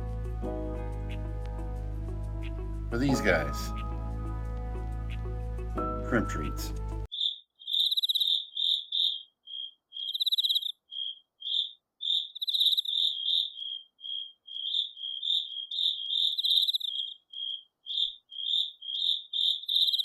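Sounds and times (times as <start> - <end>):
cricket chirping: 7.1 - 20.0.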